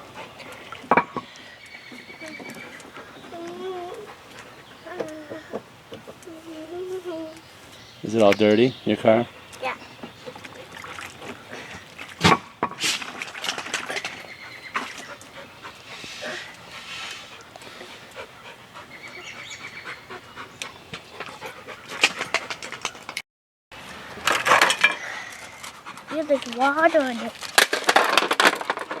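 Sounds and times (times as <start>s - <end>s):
dog panting: 2.2s - 5.0s, 14.5s - 22.6s, 25.6s - 27.4s.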